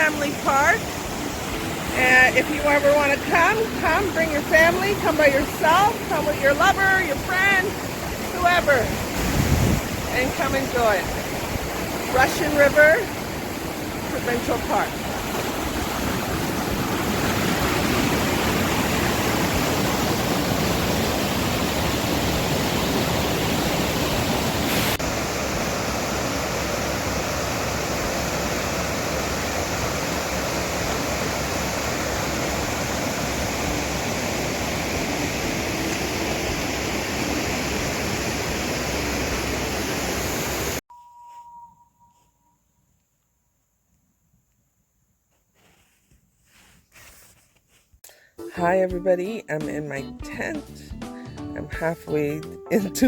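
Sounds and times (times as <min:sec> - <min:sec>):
rushing river water: 0:00.0 - 0:40.8.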